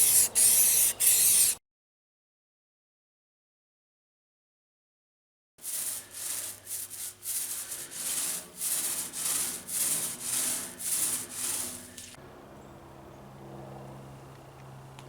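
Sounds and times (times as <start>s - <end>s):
hand sanding strokes: 0.0s - 1.6s, 5.6s - 12.2s.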